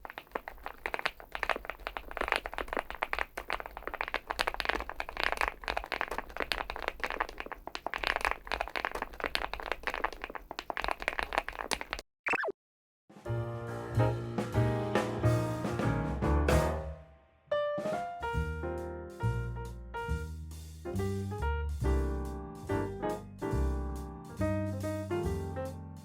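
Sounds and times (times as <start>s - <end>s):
fast typing on mechanical keyboard: 0.0s - 12.0s.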